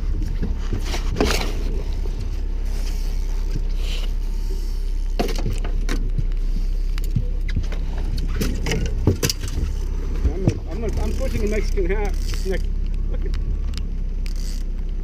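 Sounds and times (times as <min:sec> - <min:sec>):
boat motor rumbling: 0:00.0 - 0:15.0
gear knocking in boat: 0:00.0 - 0:15.0.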